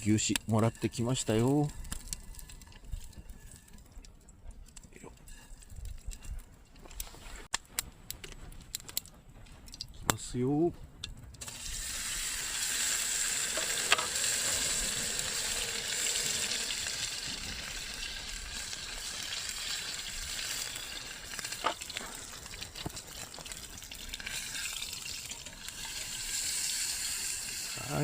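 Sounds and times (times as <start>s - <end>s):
steak sizzling in a hot pan: 11.4s - 28.0s.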